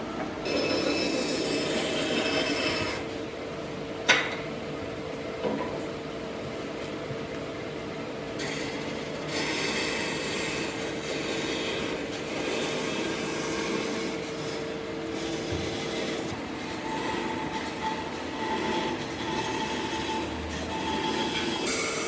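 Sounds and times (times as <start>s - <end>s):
machine hum: 8.8s - 22.0s.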